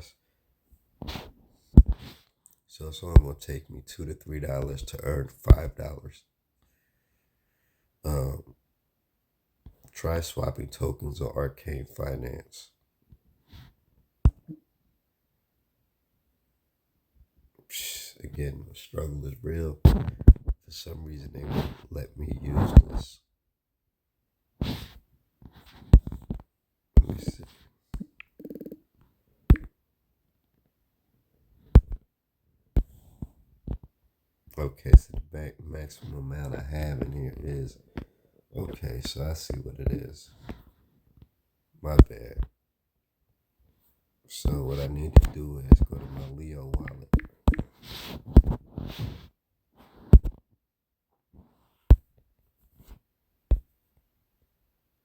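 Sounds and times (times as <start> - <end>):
sharp taps: 46.7 - 47.7.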